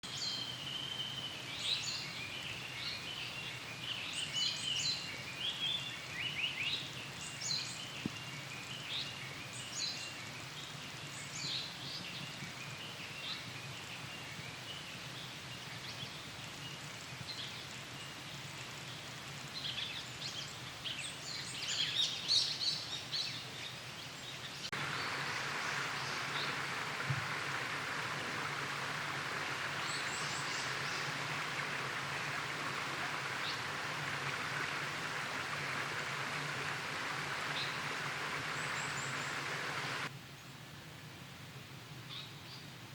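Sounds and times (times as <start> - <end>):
bird singing: 0.0 - 16.2, 19.6 - 40.1
steady rushing noise: 24.7 - 40.1.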